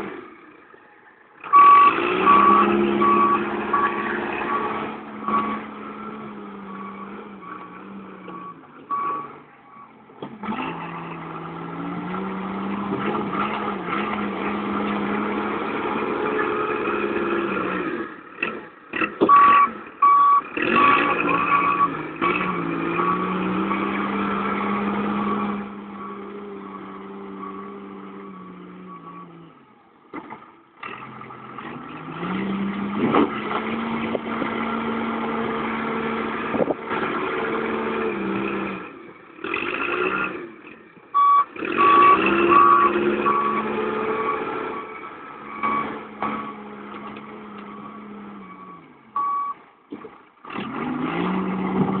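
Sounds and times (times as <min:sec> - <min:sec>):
truck engine revving: 0:01.4 - 0:52.0
reversing alarm beeping: 0:01.5 - 0:05.7, 0:06.7 - 0:10.0, 0:19.3 - 0:22.0, 0:41.2 - 0:45.9, 0:47.7 - 0:49.6.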